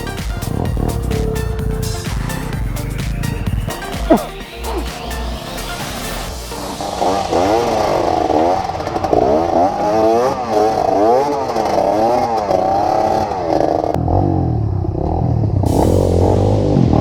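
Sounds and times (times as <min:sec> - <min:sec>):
motorcycle engine revving: 0:06.8 - 0:17.0.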